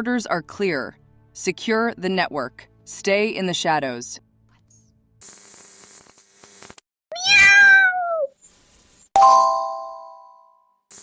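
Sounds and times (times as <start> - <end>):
static hiss: 5.2 - 6.8
cat meowing: 7.1 - 8.3
bell-like ding: 9.2 - 10.5.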